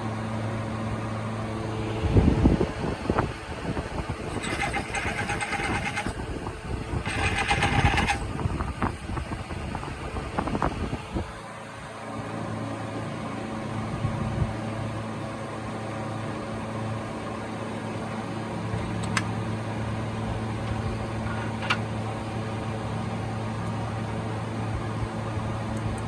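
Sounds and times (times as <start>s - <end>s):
machine humming: 0.0s - 11.6s.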